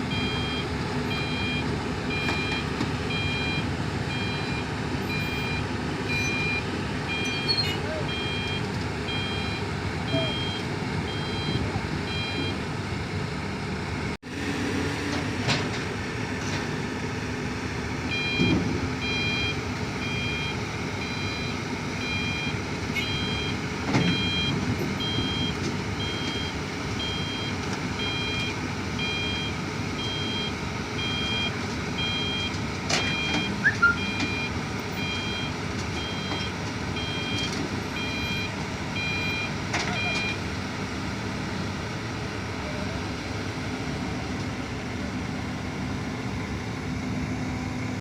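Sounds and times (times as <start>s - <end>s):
excavator diesel engine: 0.0s - 48.0s
travel alarm beeping: 0.1s - 12.6s, 18.1s - 37.4s, 38.0s - 40.4s.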